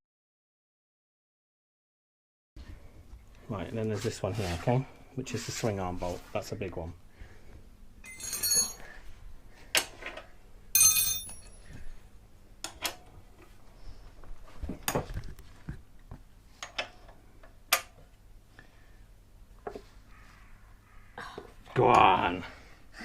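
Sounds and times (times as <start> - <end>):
metal tools clinking: 8.0 - 9.0, 10.8 - 11.8.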